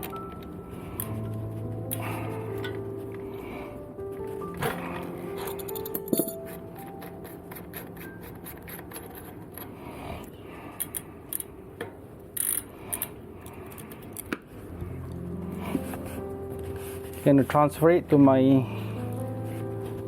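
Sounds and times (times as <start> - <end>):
metal scraping and clinking: 4.6 - 6.6.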